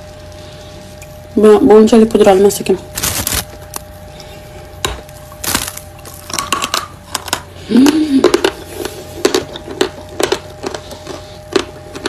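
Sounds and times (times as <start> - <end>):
chewing crunchy chalk: 8.2 - 12.0.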